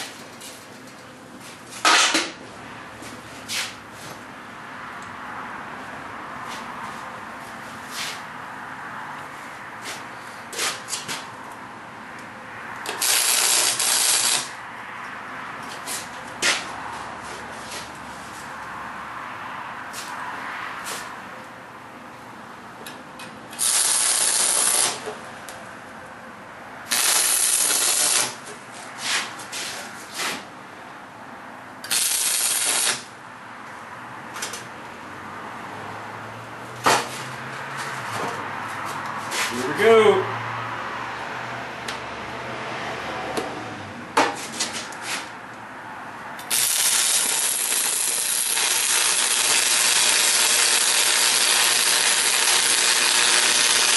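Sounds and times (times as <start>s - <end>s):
welding arc crackling hiss: 12.9s - 14.6s, 23.6s - 25.1s, 26.9s - 28.4s, 31.9s - 33.1s, 46.4s - 53.9s.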